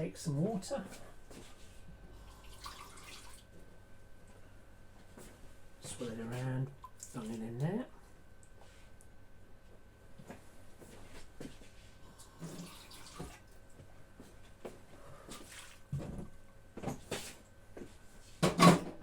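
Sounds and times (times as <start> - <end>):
water sloshing in a bowl: 2.2 - 3.7, 5.9 - 7.8, 12.2 - 13.8, 15.2 - 16.3.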